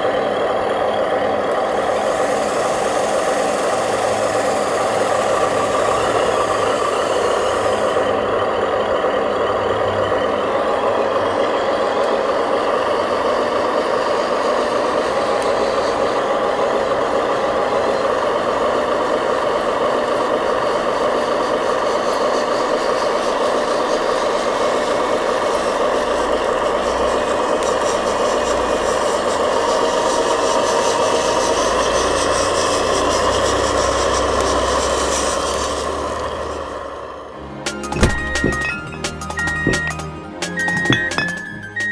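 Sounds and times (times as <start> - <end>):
toy truck mechanical drone: 0.0 - 41.9.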